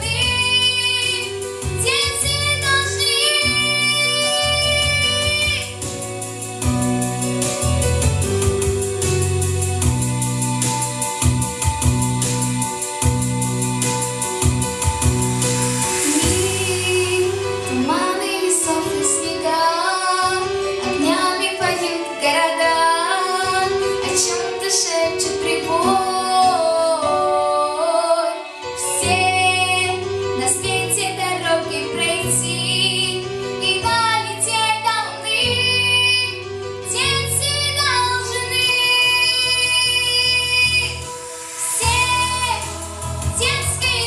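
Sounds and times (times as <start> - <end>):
young woman singing: 0.0 - 5.9, 15.9 - 44.0
bass: 0.0 - 28.0, 28.7 - 44.0
keyboard chords: 0.0 - 44.0.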